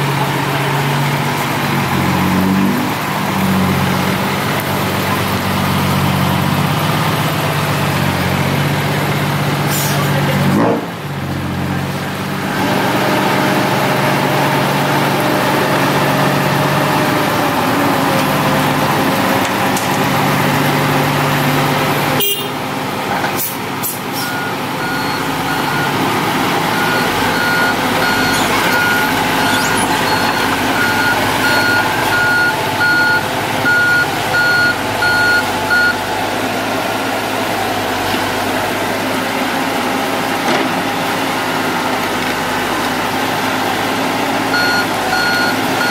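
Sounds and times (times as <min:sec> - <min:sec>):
diesel machinery engine running: 0:00.0 - 0:45.9
reversing alarm beeping: 0:24.2 - 0:26.0, 0:26.7 - 0:36.0, 0:44.5 - 0:45.9.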